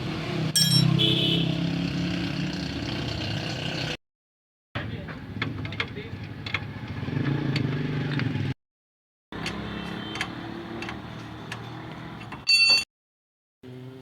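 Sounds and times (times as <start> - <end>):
short electronic beep: 0.6 - 1.2.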